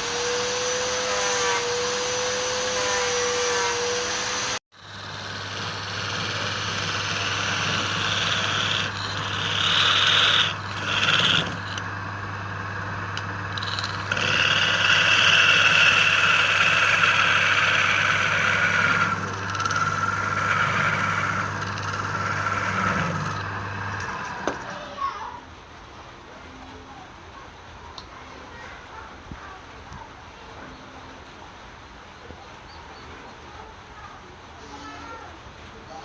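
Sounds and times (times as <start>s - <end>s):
lathe motor hum: 0.0s - 24.7s
turning tool squealing on wood: 0.2s - 11.9s, 13.2s - 24.8s.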